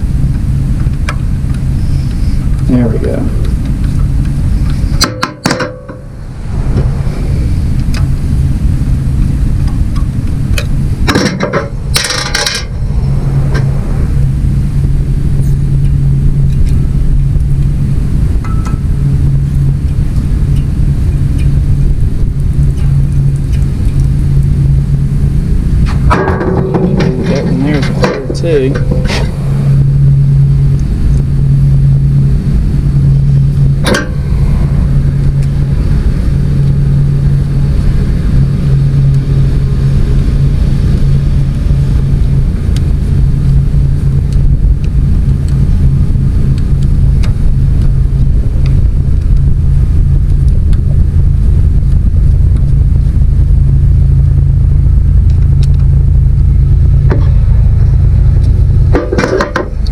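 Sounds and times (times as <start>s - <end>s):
engine humming steadily: 0.0s - 59.9s.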